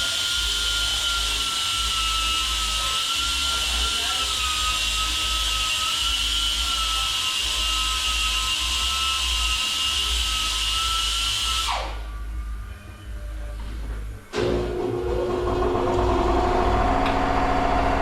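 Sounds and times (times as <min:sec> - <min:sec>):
power tool whining: 0:00.0 - 0:12.0.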